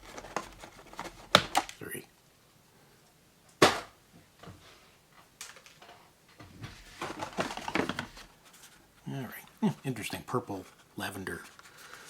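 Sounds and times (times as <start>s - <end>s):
packaging rustling: 0.0s - 1.9s, 6.7s - 8.8s.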